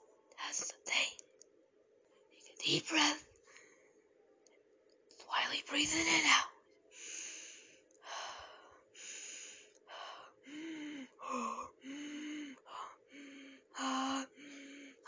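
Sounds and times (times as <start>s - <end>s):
person breathing deeply: 7.0s - 15.0s.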